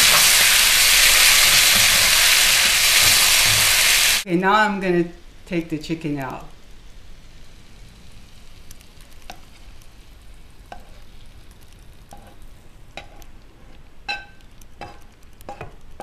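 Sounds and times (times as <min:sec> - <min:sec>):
faint sizzle: 0:00.0 - 0:16.0
metal utensil scraping a pot: 0:13.0 - 0:15.8.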